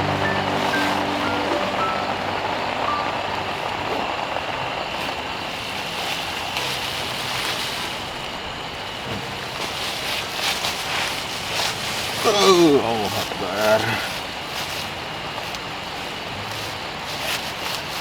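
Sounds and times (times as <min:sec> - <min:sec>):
faint high tone: 0:00.0 - 0:04.8
light rain on a tent: 0:00.0 - 0:18.0.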